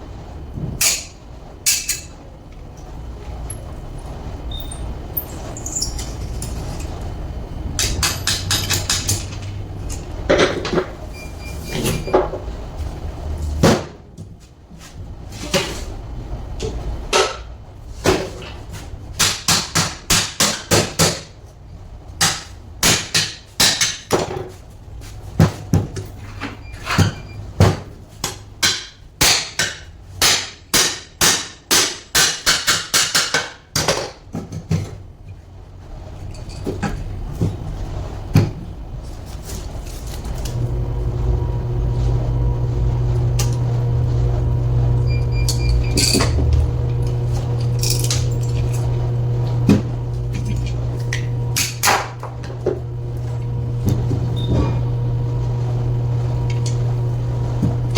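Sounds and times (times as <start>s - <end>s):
low hum: 39.9s - 57.9s.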